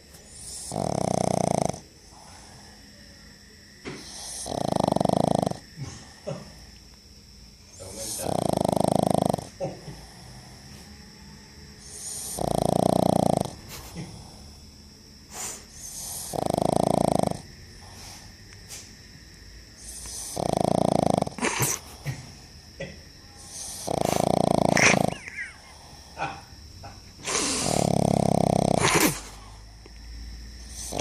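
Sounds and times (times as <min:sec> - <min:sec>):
dog snoring: 0:00.0 - 0:02.7, 0:03.8 - 0:06.6, 0:07.7 - 0:10.8, 0:11.8 - 0:14.6, 0:15.3 - 0:18.3, 0:19.8 - 0:22.4, 0:23.4 - 0:26.5, 0:27.2 - 0:29.7, 0:30.6 - 0:31.0.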